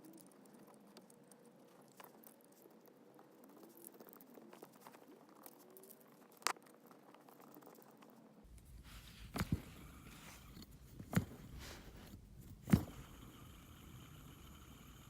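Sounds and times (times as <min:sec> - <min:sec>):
fidget spinner clicks and taps: 0:09.4 - 0:15.0.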